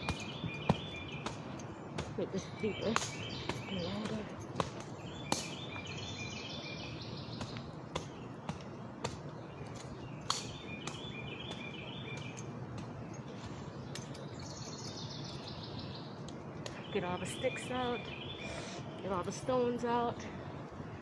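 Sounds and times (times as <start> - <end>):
outdoor background noise: 0.0 - 21.0
songbird singing: 0.0 - 21.0.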